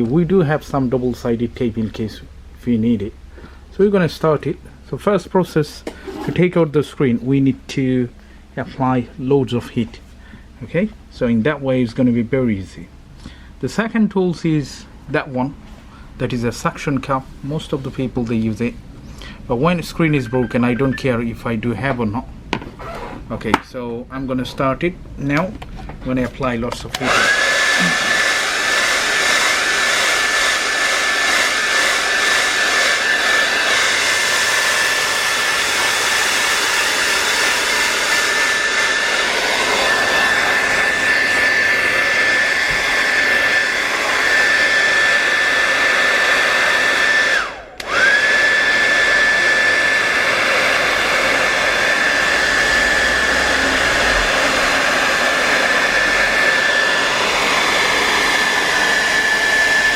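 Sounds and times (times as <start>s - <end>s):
hot air blower whining: 19.2s - 21.3s, 26.7s - 59.9s.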